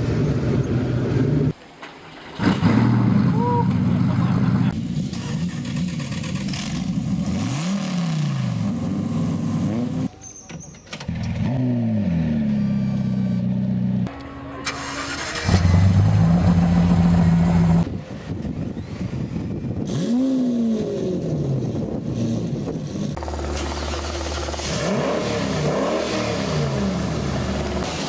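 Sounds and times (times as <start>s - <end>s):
car engines revving: 2.3s - 10.1s, 11.2s - 18.1s, 18.7s - 28.0s
loud car engine idling: 23.2s - 25.0s.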